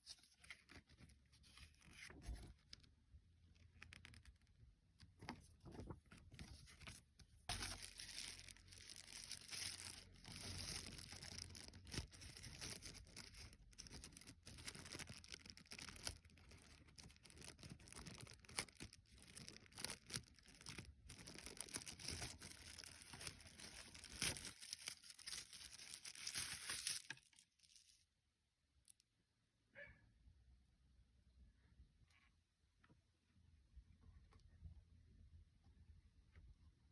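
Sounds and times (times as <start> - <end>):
packaging crinkling and tearing: 5.7 - 28.0.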